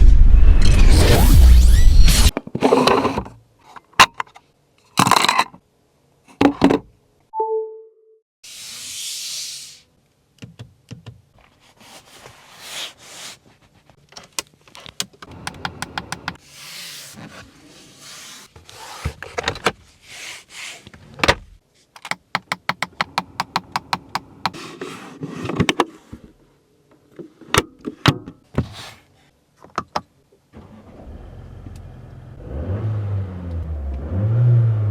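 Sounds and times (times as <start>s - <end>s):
car clicks and clunks: 15.0s - 16.4s.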